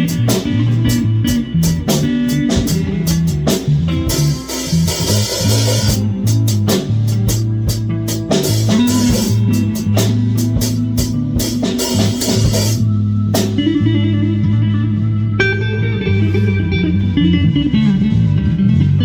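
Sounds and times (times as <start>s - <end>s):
drum kit: 0.0s - 13.8s
bass guitar low notes: 0.0s - 19.0s
electric guitar: 0.0s - 19.0s.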